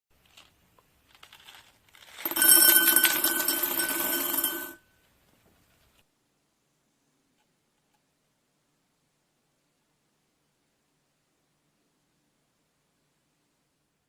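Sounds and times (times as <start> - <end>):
electric bell ringing: 2.3 - 4.8.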